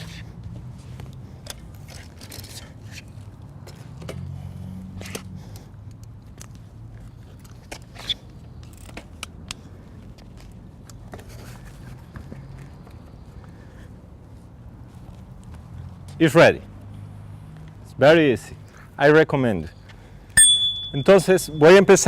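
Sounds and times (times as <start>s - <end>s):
bicycle hinges clicking and scraping: 0.0s - 13.0s.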